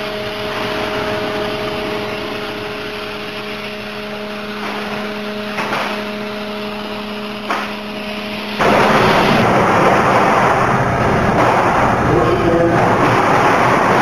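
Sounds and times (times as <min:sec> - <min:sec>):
machine hum: 0:00.0 - 0:14.0
plasma torch hissing: 0:03.0 - 0:14.0.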